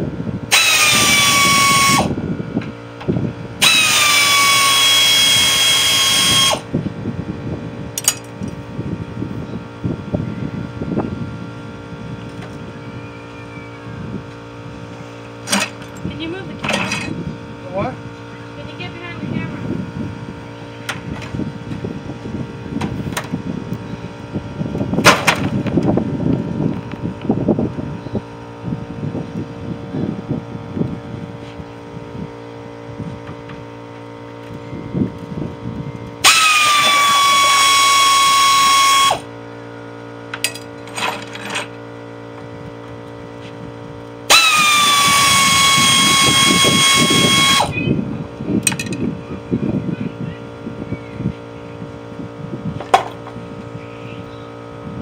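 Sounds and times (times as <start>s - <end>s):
steady hum: 0.0s - 55.0s
power drill whining: 0.5s - 2.2s, 3.6s - 6.7s, 36.2s - 39.3s, 44.3s - 48.0s.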